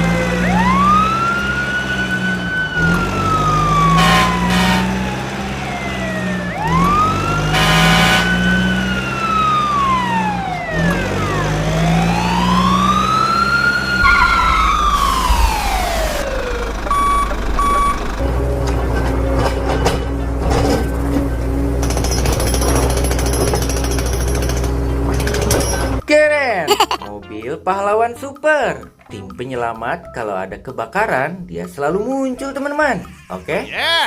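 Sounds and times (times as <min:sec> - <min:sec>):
fire engine siren wailing: 0:00.0 - 0:19.5
steady low drone: 0:13.9 - 0:19.8
short beeps: 0:16.9 - 0:18.2.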